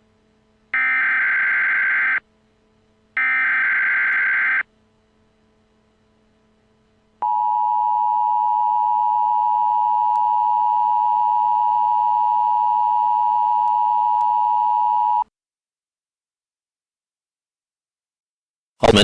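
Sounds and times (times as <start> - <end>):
emergency alert tone: 0.8 - 2.2, 3.2 - 4.6.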